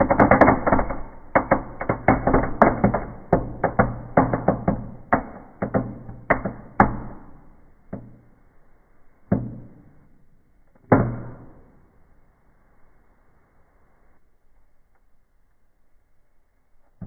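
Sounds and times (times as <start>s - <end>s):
firework popping and crackling: 0.0s - 8.3s.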